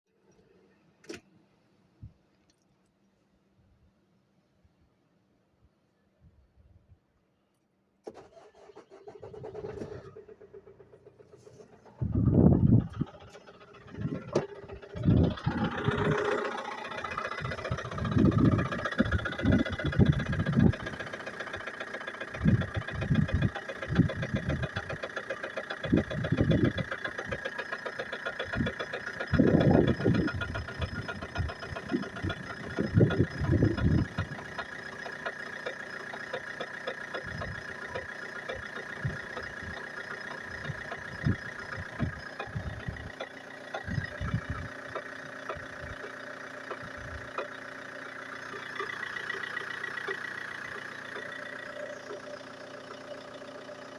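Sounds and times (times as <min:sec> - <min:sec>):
diesel engine idling: 0:08.2 - 0:53.9
fast engine knock: 0:12.0 - 0:52.4.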